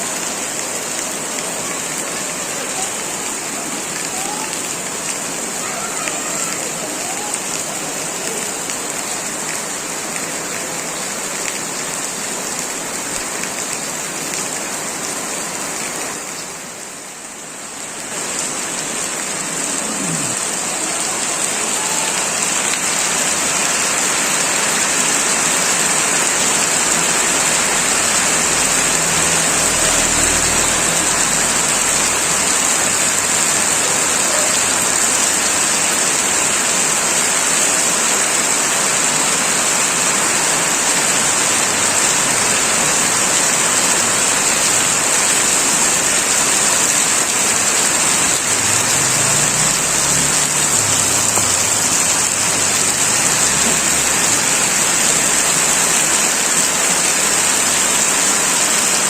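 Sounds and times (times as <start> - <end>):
heavy rain pouring: 0.0 - 59.0.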